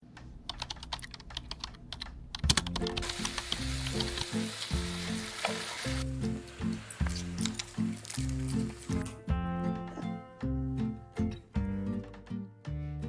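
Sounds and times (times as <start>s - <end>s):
quick sharp taps and clicks: 0.0s - 4.3s
meat sizzling in a pan: 3.0s - 9.0s
music with repeating bass line: 3.6s - 5.2s, 9.0s - 13.0s.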